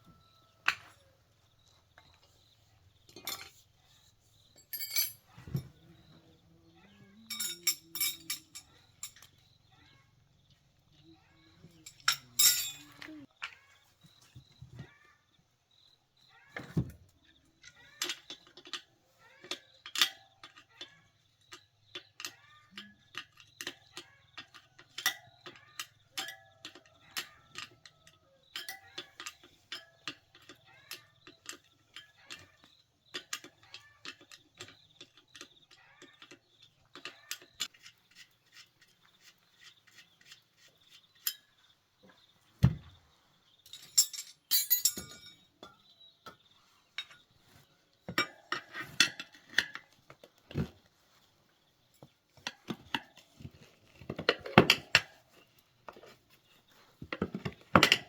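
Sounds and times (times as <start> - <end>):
metallic clinks and knocks: 3.0 - 3.8, 4.4 - 6.2, 7.1 - 9.6, 11.6 - 13.6, 17.6 - 38.7, 43.6 - 50.7, 57.0 - 58.0.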